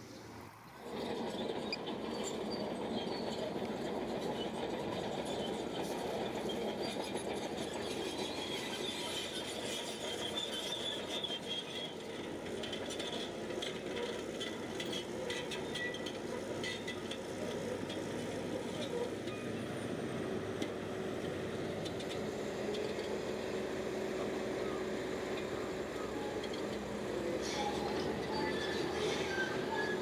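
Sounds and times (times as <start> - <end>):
bulldozer running: 0.2 - 30.0
steel tracks squealing: 0.8 - 30.0.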